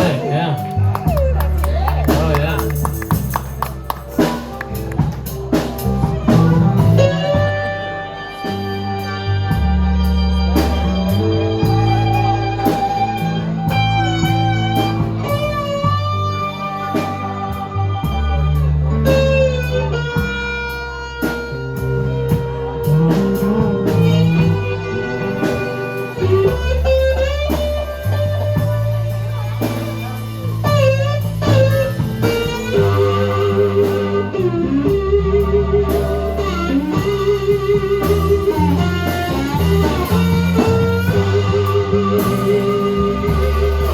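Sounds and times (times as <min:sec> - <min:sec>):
bass line: 0:00.0 - 0:43.9
electric guitar bent notes: 0:00.0 - 0:43.9.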